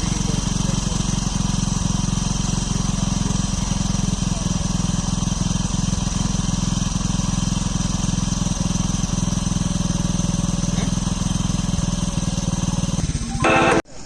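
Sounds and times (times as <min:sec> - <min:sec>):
engine running steadily: 0:00.0 - 0:13.9
faint high whine: 0:13.0 - 0:14.0.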